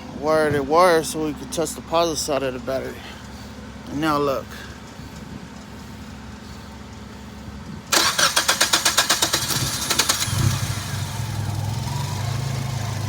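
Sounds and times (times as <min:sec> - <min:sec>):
car engine idling: 0:00.9 - 0:13.0
starter motor cranking: 0:07.9 - 0:11.4.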